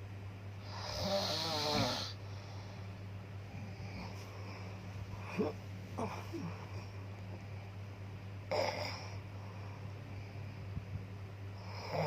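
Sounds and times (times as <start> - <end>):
steady low hum: 0.0 - 12.0
pet snoring: 0.6 - 2.2, 8.5 - 9.2, 11.6 - 12.0.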